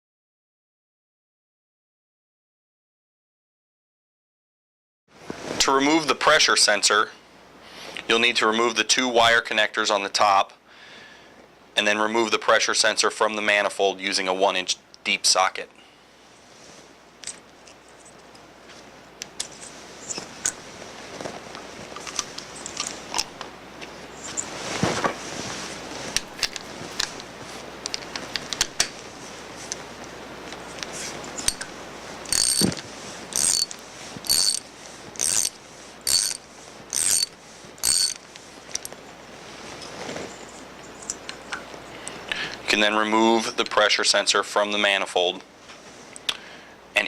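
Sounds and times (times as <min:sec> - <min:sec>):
tool handling clicks: 0:26.2 - 0:29.0, 0:30.5 - 0:39.0
ratchet wrench ratcheting: 0:31.4 - 0:31.7, 0:32.3 - 0:38.2.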